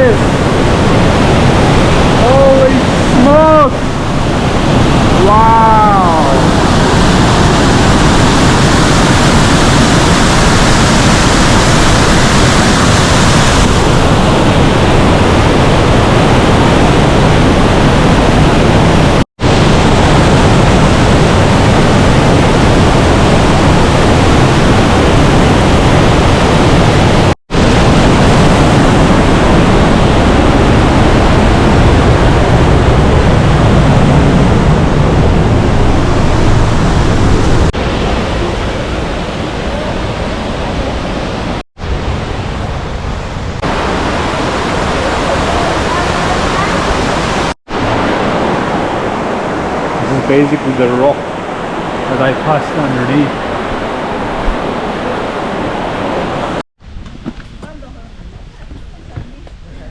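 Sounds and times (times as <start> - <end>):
waterfall rushing: 0.0 - 56.6.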